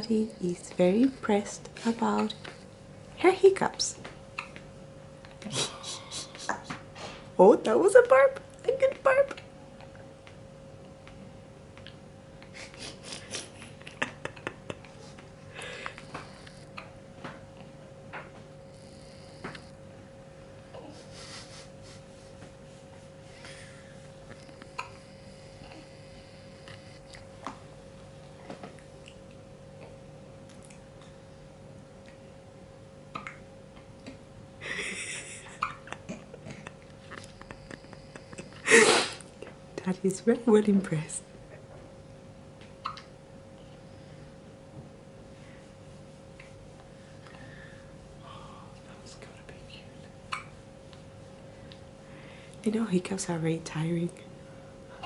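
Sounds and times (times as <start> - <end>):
baby hiccups: 24.7 - 25.0, 33.1 - 33.4, 42.8 - 43.0, 50.3 - 50.5.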